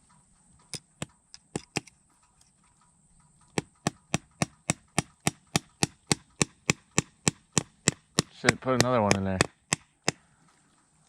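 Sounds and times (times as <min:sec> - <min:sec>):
hammer driving nail into wood: 0:03.6 - 0:10.2.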